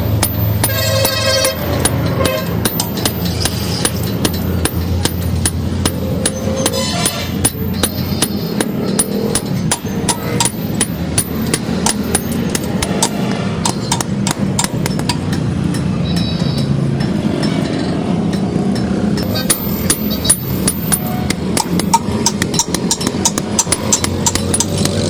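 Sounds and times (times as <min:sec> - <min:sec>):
hammer striking steel on anvil: 0:00.0 - 0:25.0.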